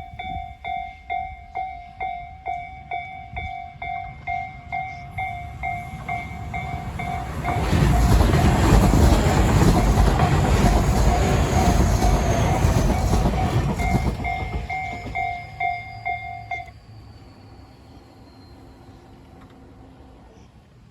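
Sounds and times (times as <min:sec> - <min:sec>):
level-crossing bell dinging: 0:00.0 - 0:08.9, 0:10.7 - 0:16.8
train wheel clatter: 0:00.0 - 0:16.8.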